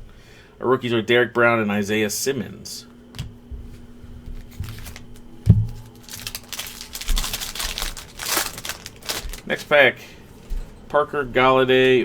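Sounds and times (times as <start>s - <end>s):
plastic wrapper crinkling and tearing: 4.4s - 9.8s.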